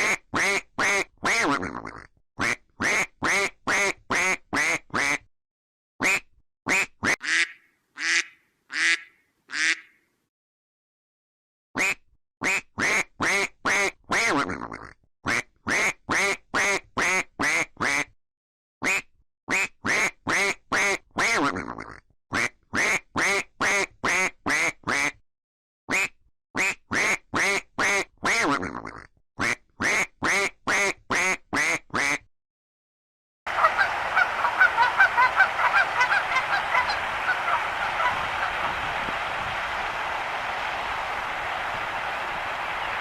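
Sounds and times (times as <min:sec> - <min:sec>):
duck quacking: 0:00.0 - 0:05.2, 0:06.0 - 0:10.0, 0:25.9 - 0:32.3, 0:33.5 - 0:38.7.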